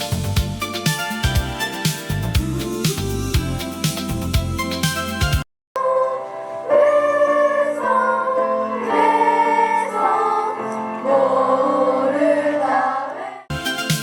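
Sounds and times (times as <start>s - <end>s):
music with heavy bass and beat: 0.0s - 5.4s, 13.5s - 14.0s
choir singing: 5.8s - 13.5s.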